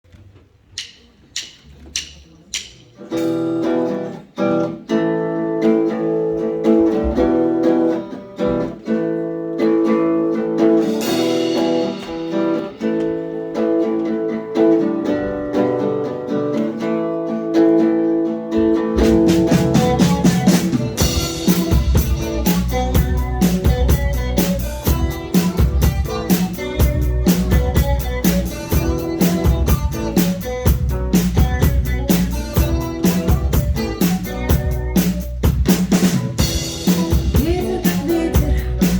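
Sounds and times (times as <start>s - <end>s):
count-in ticks: 0.8s - 2.8s
guitar strumming chords: 3.0s - 38.9s.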